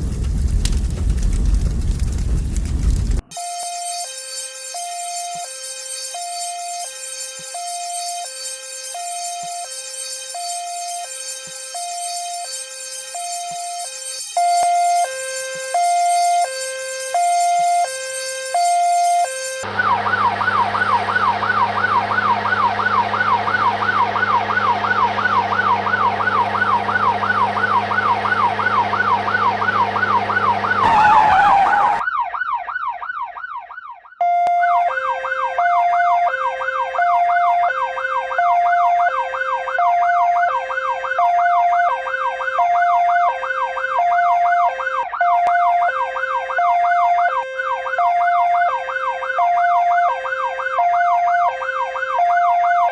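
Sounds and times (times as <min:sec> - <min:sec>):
two-tone siren: 0:03.2 - 0:52.9
toy siren wailing: 0:03.3 - 0:52.9
loud rush of noise: 0:30.8 - 0:32.0.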